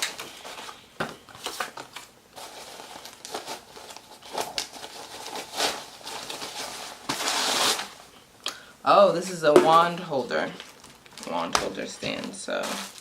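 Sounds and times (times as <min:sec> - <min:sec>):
packaging crinkling: 0:01.4 - 0:08.0, 0:10.4 - 0:13.0.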